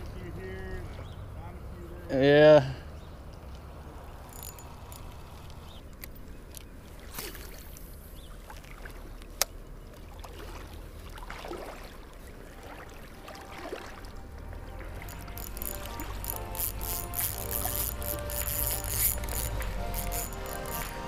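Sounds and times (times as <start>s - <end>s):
small ticks: 4.3s - 6.7s, 15.0s - 21.0s
water lapping against a kayak: 5.6s - 16.2s.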